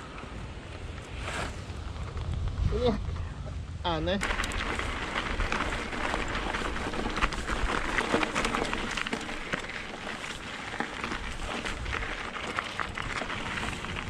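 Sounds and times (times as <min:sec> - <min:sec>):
wind rumble on microphone: 0:00.0 - 0:14.0
bike clicks and rattles: 0:04.2 - 0:14.0
bike tyres crunching on gravel: 0:04.2 - 0:14.0.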